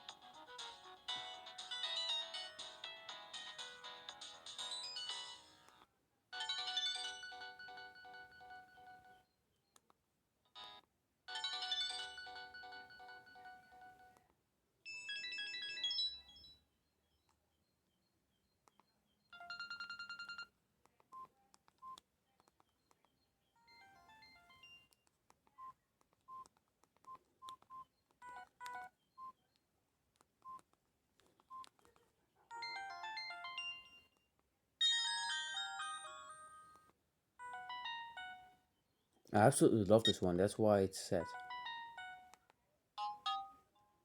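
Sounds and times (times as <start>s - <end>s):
electronic ringtone melodies: 0.0s - 5.8s, 6.4s - 9.2s, 10.6s - 14.1s, 14.9s - 16.6s, 32.5s - 34.2s, 34.8s - 38.6s, 41.2s - 42.4s, 43.0s - 43.7s
phone ringtone held tone: 0.0s - 5.8s, 6.4s - 9.2s, 10.6s - 14.2s, 14.9s - 16.6s, 19.4s - 20.5s, 23.6s - 24.9s, 32.5s - 34.2s, 34.8s - 38.6s, 41.2s - 42.4s, 43.0s - 43.8s.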